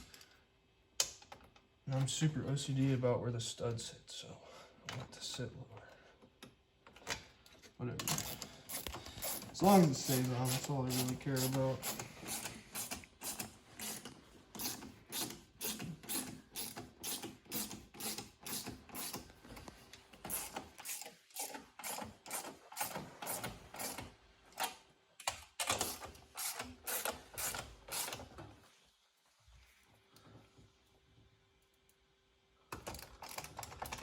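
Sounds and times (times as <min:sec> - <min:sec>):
ratchet wrench clicking: 0:10.5 - 0:19.2.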